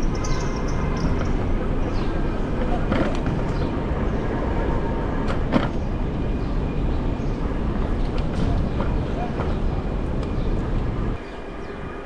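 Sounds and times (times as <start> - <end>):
wind and road rumble: 0.0 - 12.0.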